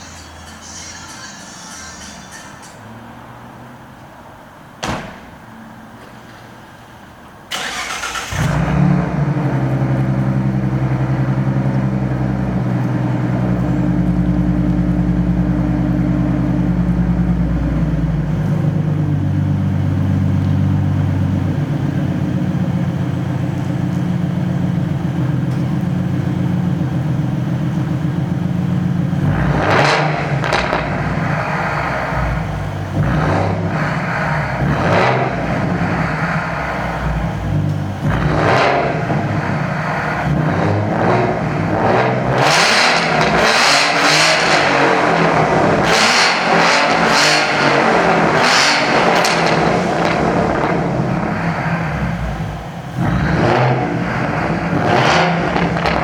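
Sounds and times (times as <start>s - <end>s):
car engine idling deeply: 6.8s - 56.0s
car starter cranking: 7.5s - 9.3s
engine revving: 7.5s - 23.6s, 28.7s - 56.0s.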